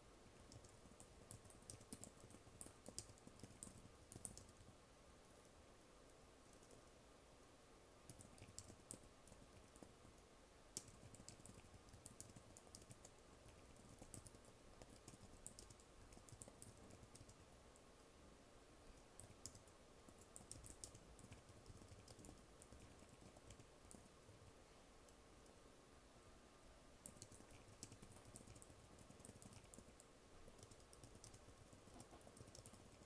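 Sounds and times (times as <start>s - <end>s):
computer keyboard typing: 0.4s - 4.7s, 6.5s - 6.8s, 8.1s - 9.9s, 10.8s - 17.6s, 19.0s - 24.5s, 27.0s - 33.0s.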